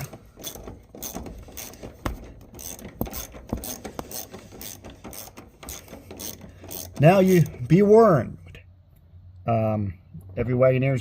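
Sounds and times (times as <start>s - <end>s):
ratchet wrench clicking: 0.4s - 7.6s.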